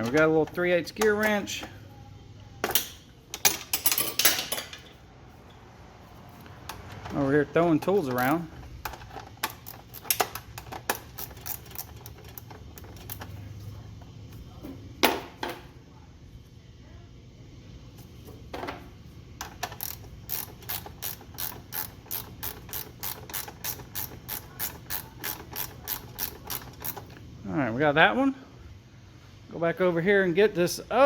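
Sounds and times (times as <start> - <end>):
ratchet wrench clicking: 8.2 - 13.3, 19.4 - 27.2.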